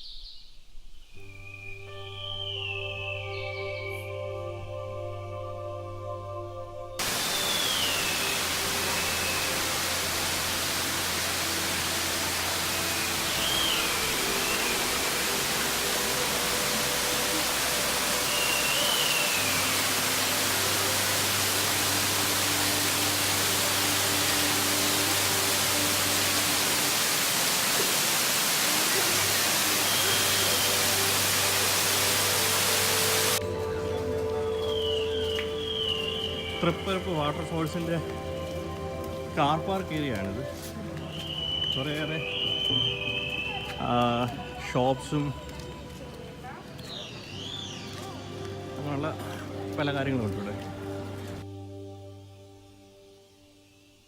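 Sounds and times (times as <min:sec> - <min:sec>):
faint wavering whistles: 0:01.0 - 0:04.4, 0:34.5 - 0:36.8, 0:41.1 - 0:43.8
waterfall rushing: 0:07.0 - 0:38.6, 0:40.9 - 0:44.6.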